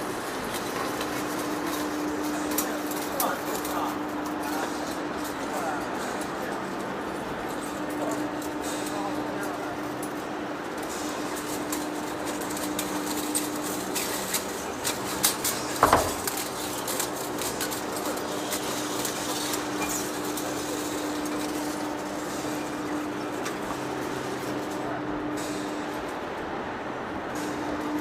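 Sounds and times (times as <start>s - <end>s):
metallic clanks and knocks: 15.8s - 16.4s.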